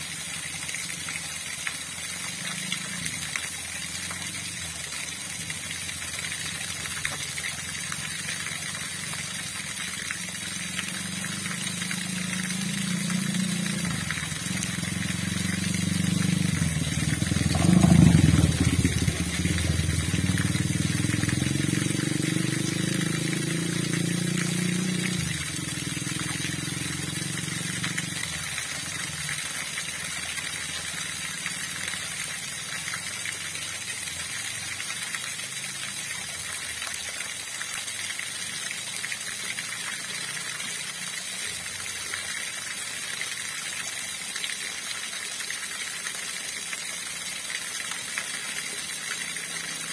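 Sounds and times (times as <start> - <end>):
engine passing: 7.8 - 29.6
river water rushing: 8.8 - 31.2.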